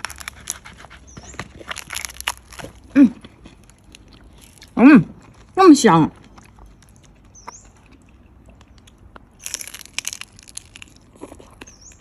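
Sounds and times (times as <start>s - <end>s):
crunching crispy pork skin: 0.0s - 12.0s.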